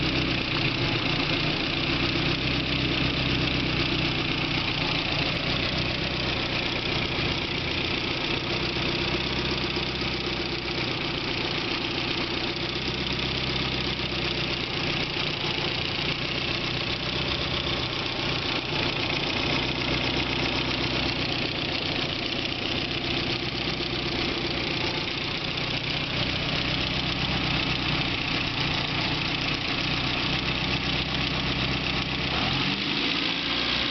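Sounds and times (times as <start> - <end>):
car engine idling: 0.0 - 33.9
rapid engine ticking: 0.0 - 33.9.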